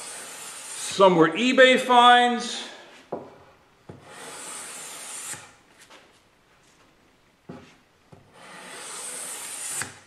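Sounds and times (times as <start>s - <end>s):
wooden plane sliding on table: 3.9s - 5.5s, 7.5s - 10.0s.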